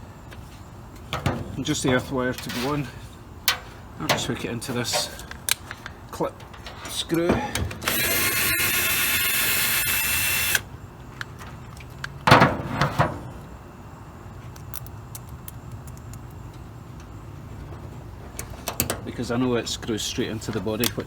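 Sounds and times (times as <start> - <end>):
power drill driving screw: 7.9 - 10.6.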